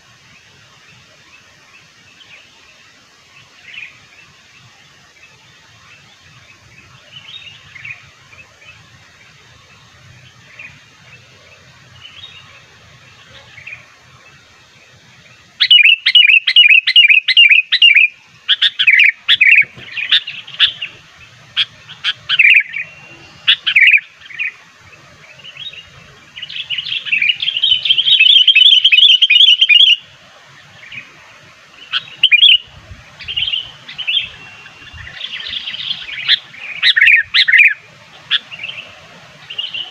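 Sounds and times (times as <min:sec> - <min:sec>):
bird chattering and whistling: 0:15.6 - 0:21.0, 0:21.6 - 0:24.6, 0:26.4 - 0:30.0, 0:31.9 - 0:38.9
fast bird trill: 0:15.6 - 0:21.0, 0:21.6 - 0:24.5, 0:26.5 - 0:30.0, 0:31.9 - 0:38.9.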